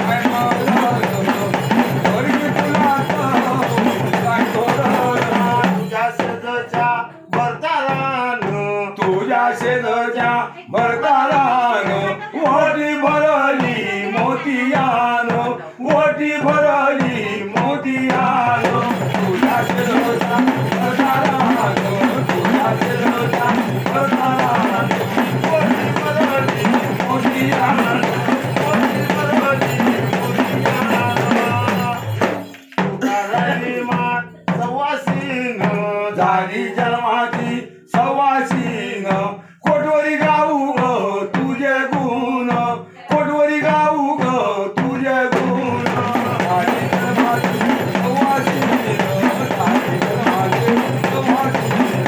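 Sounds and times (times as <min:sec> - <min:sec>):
fast dense drumming: 0:00.0 - 0:08.7, 0:09.6 - 0:38.8, 0:43.2 - 0:52.0
folk music with drums: 0:00.0 - 0:52.0.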